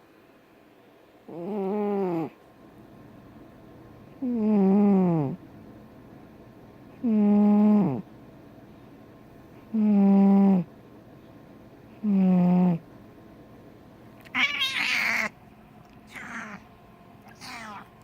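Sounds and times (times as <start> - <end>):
cat snoring: 1.3 - 2.4, 4.2 - 5.4, 7.0 - 8.0, 9.7 - 10.7, 12.0 - 12.8.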